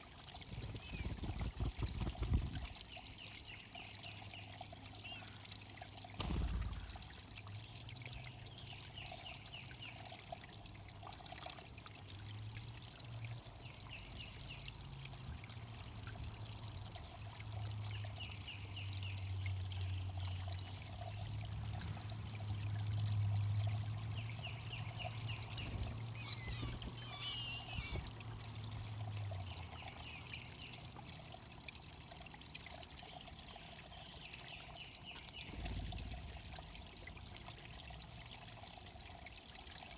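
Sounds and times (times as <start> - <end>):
water trickling into pond: 0.0 - 39.9
bird singing: 24.4 - 28.1.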